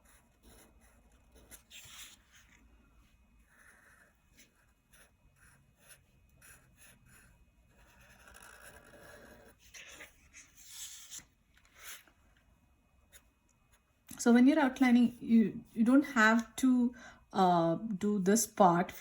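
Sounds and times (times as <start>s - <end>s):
marker drawing on paper: 0.0s - 2.6s, 3.4s - 12.1s.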